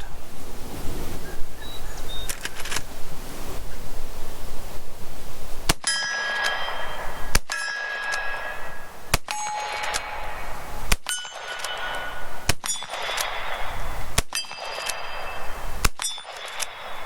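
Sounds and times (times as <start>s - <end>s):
rifle action clicks: 2.2s - 2.9s, 7.3s - 17.0s
rifle shots: 5.7s - 17.0s
metallic ringing: 5.8s - 17.0s.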